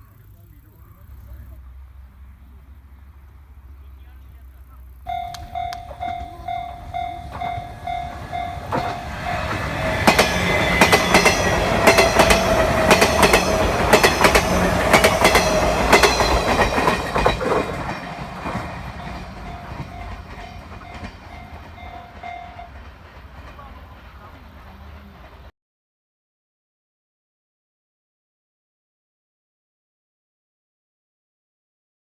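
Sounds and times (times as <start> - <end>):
electric train passing: 0.1 - 25.5
level crossing bell ringing: 5.1 - 22.7
train wheels clacking: 5.1 - 25.5.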